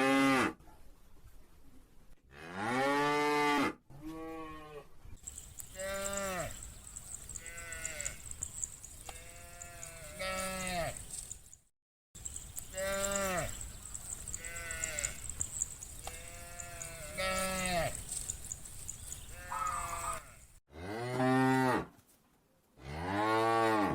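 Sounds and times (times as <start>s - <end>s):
cows mooing: 5.2s - 11.4s, 12.2s - 21.8s.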